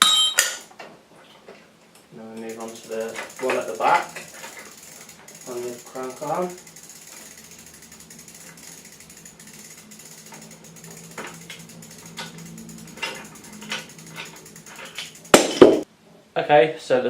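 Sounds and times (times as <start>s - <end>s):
loud metal clanks: 10.9s - 15.8s.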